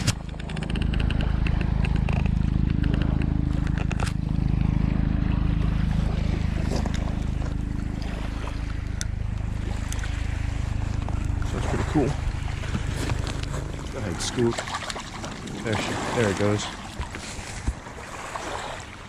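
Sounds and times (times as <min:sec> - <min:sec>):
sharp clicks: 0:00.0 - 0:04.2
low engine drone: 0:00.0 - 0:19.0.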